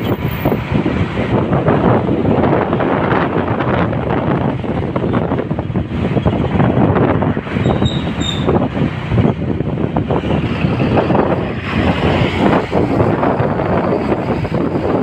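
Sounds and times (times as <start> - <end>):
bus road and engine noise: 0.0 - 15.0
short high squeaks: 7.6 - 8.5.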